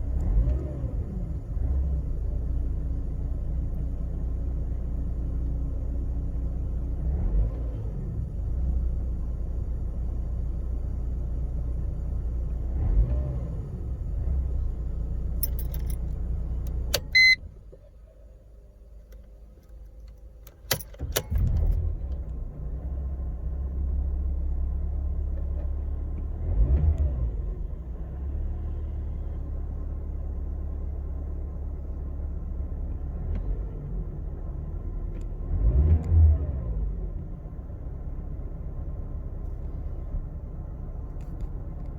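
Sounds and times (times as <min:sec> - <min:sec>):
ignition click: 0:15.4 - 0:17.9, 0:19.0 - 0:22.4
short beep: 0:17.1 - 0:17.4
engine cranking and starting: 0:20.5 - 0:22.3.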